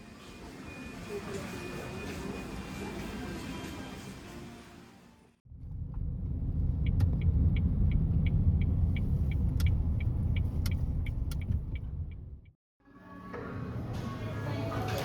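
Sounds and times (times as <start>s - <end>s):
car road and engine rumble: 5.5s - 12.5s
turn signal ticking: 6.0s - 12.6s.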